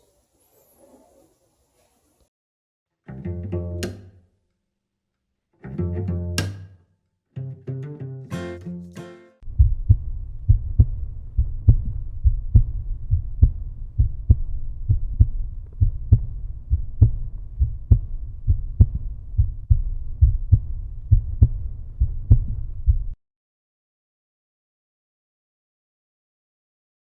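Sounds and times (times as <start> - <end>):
deep bass beat: 9.4 - 23.2.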